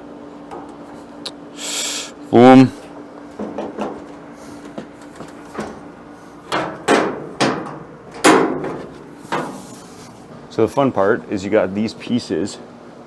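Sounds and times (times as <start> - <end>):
knocks and clunks of dryer parts: 0.4 - 1.0, 3.3 - 10.0.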